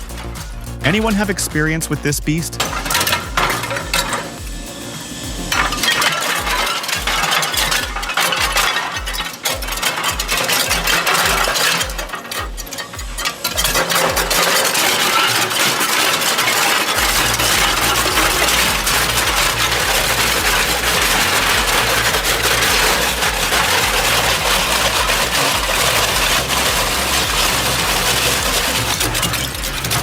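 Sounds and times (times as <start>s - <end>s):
deep engine drone: 0.0s - 6.0s, 16.9s - 30.0s
shredder crackling material: 2.4s - 30.0s.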